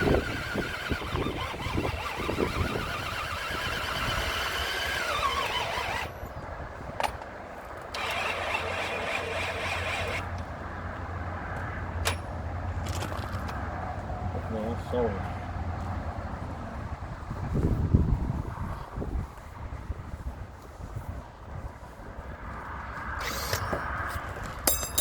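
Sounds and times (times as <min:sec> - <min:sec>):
power drill boring into wood: 0:00.0 - 0:06.2, 0:08.0 - 0:10.3, 0:23.2 - 0:23.7.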